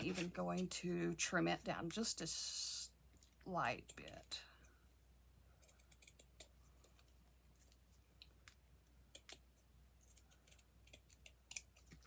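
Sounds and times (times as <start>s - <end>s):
scissors snipping: 10.1s - 12.0s.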